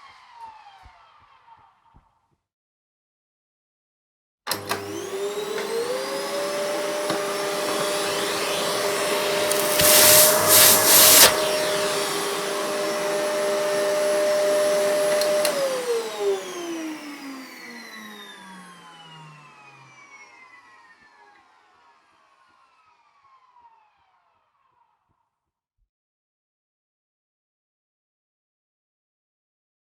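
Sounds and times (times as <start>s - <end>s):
vacuum cleaner motor whine: 4.5s - 21.3s
rush of air: 9.5s - 11.6s.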